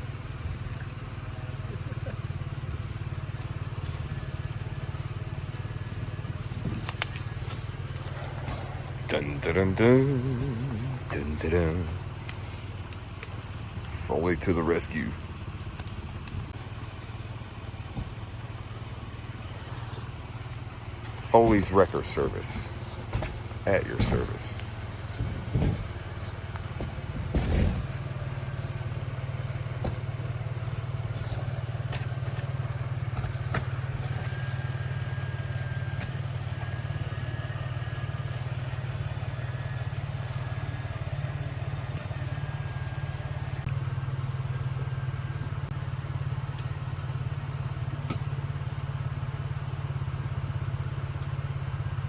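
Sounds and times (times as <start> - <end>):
vehicle engine droning: 0.0 - 52.0.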